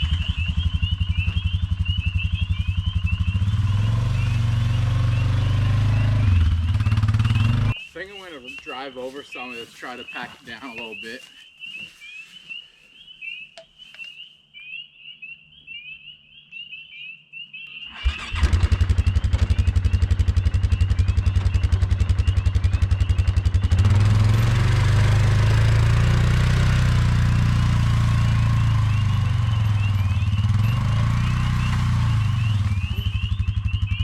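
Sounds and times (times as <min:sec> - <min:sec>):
quad bike engine starting and idling: 0:00.0 - 0:07.8, 0:17.7 - 0:34.0.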